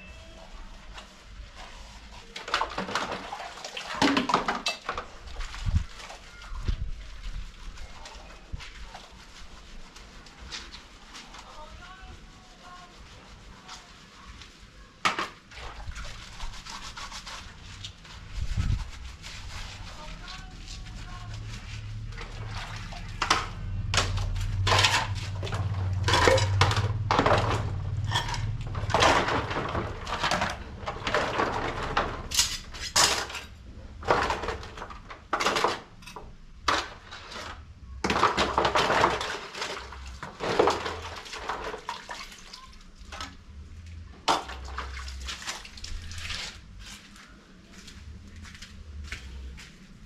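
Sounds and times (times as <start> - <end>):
pots and cutlery clattering: 4.0 - 5.1, 26.0 - 34.7.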